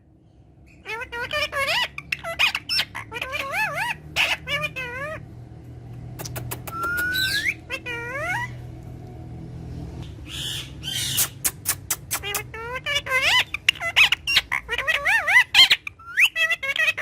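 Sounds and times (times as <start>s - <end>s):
parrot squawking: 0.7s - 5.3s, 6.2s - 8.7s, 10.2s - 17.0s
parrot clicking: 6.2s - 7.3s
parrot whistling: 6.6s - 8.5s.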